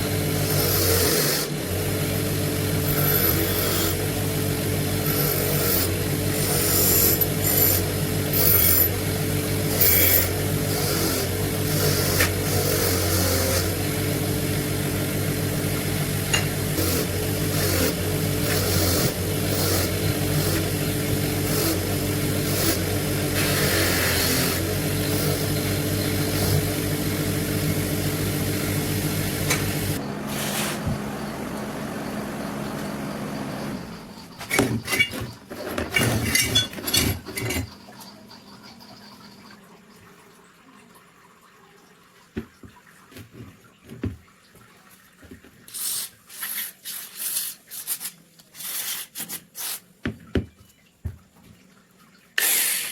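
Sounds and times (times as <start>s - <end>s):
power tool motor running: 0.0s - 30.5s
tool scraping metal: 34.4s - 37.7s.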